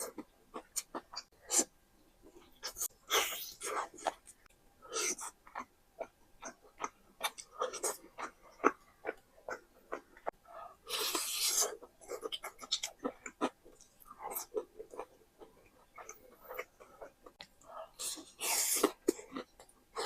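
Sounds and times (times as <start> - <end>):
wet chewing: 5.0 - 20.0.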